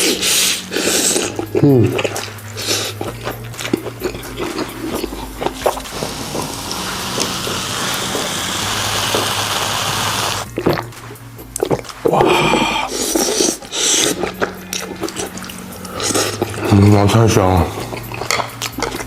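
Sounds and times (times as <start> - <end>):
hot oil sizzling on meat: 5.8 - 10.5.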